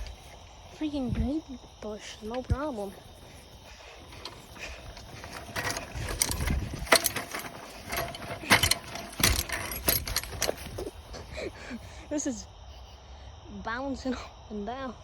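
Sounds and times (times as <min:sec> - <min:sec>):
vehicle rattling over rough ground: 0:00.0 - 0:11.8.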